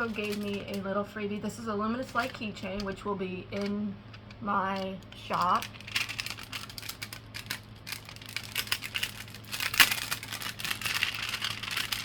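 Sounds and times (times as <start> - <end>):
packaging crinkling: 0.0 - 0.9, 2.0 - 12.0.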